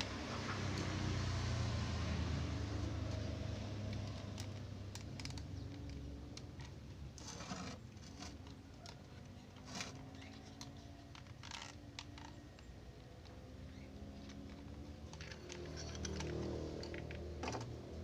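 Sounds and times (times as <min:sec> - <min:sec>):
short scrapes: 0:07.2 - 0:08.4.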